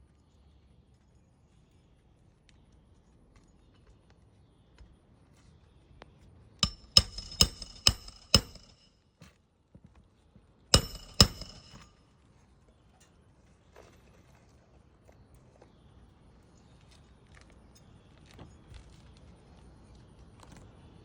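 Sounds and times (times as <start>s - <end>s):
hammer striking roofing nails: 6.6s - 8.9s, 10.8s - 11.9s.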